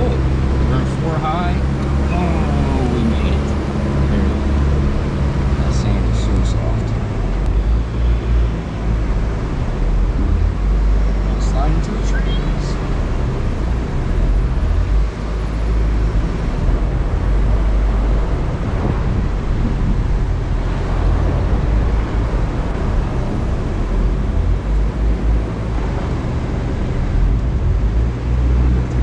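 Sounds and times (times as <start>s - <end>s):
truck engine and tyres rumbling: 0.0s - 29.0s.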